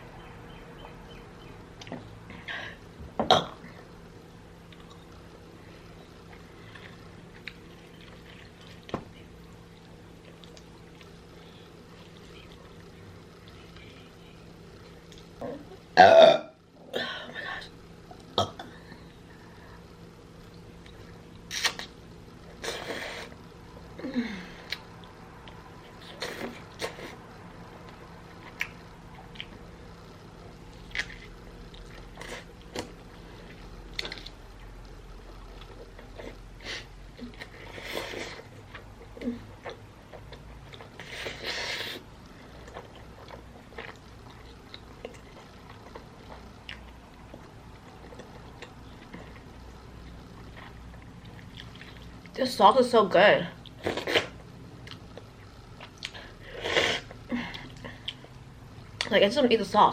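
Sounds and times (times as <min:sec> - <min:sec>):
steady low hum: 0:00.0 - 0:59.9
wet chewing sounds: 0:06.2 - 0:14.1, 0:24.7 - 0:29.8, 0:37.1 - 0:52.4.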